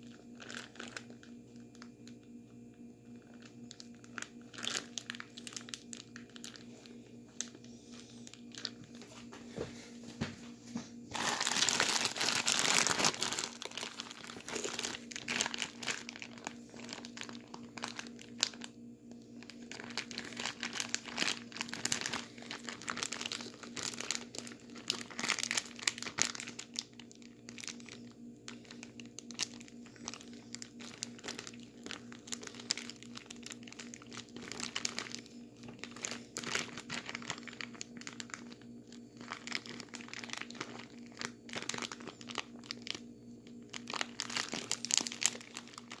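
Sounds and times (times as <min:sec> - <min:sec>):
plastic bag crinkling: 0:00.0 - 0:02.2, 0:03.0 - 0:46.0
steady low hum: 0:00.0 - 0:46.0
ice crunching: 0:11.1 - 0:18.4.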